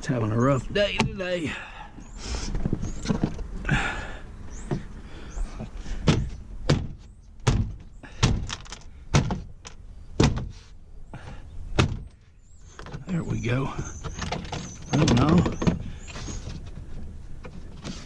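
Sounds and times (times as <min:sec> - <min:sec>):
panel rattling: 0:12.8 - 0:18.0.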